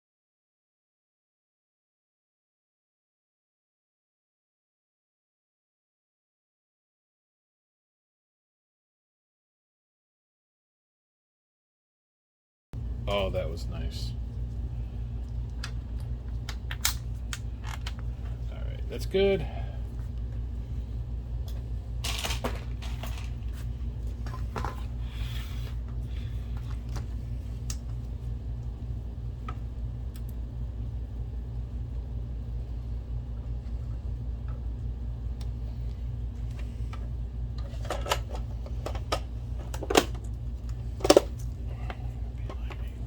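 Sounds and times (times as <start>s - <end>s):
steady low hum: 12.8s - 43.0s.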